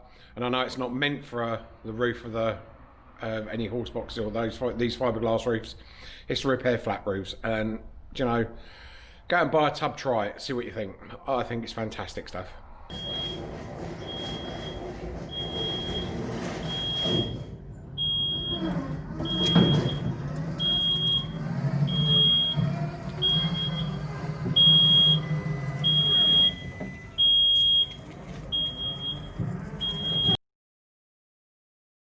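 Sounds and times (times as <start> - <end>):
knocks and clatter: 12.9 - 27.2
diesel engine running: 12.9 - 30.4
reversing alarm beeps: 12.9 - 30.4.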